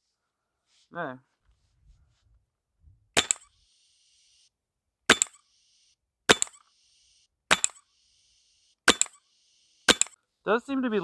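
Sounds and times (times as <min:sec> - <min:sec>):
paintball marker shots: 0:03.2 - 0:03.6, 0:05.1 - 0:05.5, 0:06.3 - 0:06.8, 0:07.5 - 0:08.0, 0:08.8 - 0:10.2.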